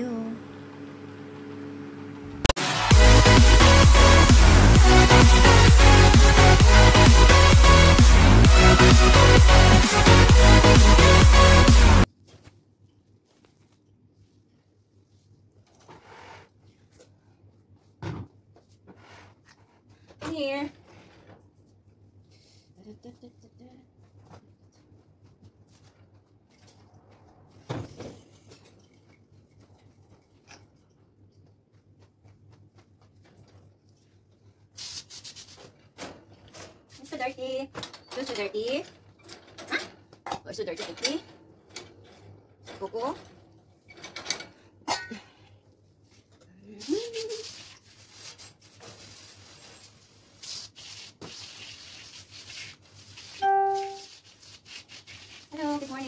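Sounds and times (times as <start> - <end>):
brush scrubbing bird cage: 34.7 - 35.7, 46.8 - 56.0.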